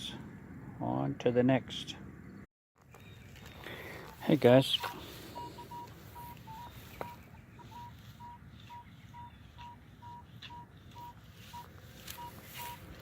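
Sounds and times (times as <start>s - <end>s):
metal detector beeping: 4.5s - 13.0s.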